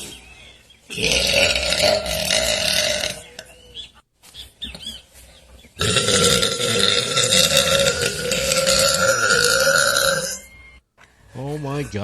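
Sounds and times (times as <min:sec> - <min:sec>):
long loud burp: 0:00.9 - 0:03.5, 0:05.8 - 0:10.5.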